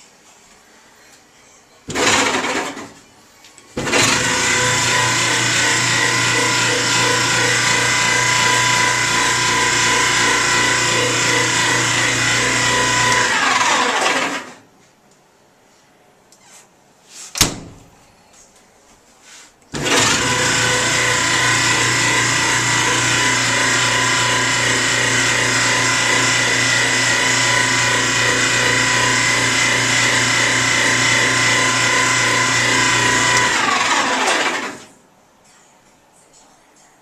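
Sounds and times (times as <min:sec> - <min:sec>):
clothes dryer motor hum: 0:03.8 - 0:14.7, 0:19.7 - 0:34.9.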